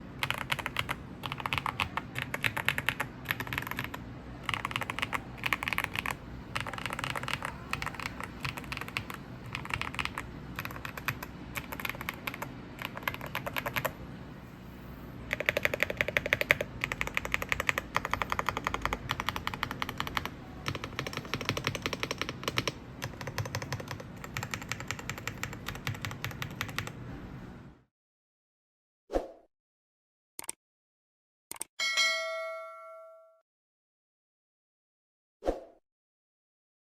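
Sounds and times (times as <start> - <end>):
typing on mechanical keyboard: 0.2 - 14.0, 15.3 - 27.0.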